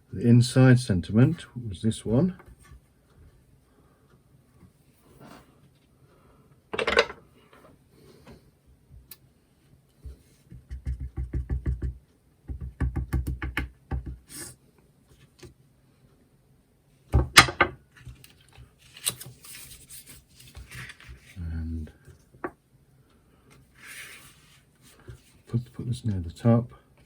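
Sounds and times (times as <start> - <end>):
stamp block knocking on desk: 10.6 - 14.2.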